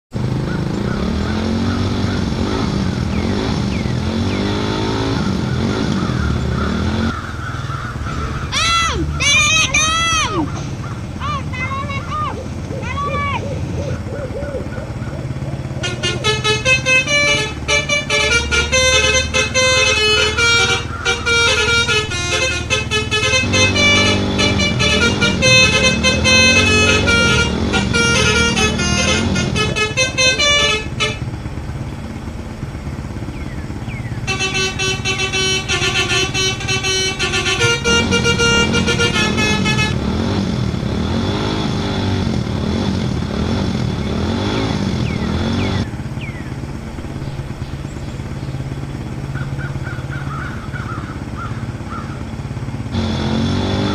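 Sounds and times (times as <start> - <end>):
vehicle motor revving: 0.1 - 53.9
musical horn playing a tune: 1.1 - 7.1, 8.1 - 13.4, 15.3 - 31.6, 34.2 - 45.9, 52.9 - 53.9.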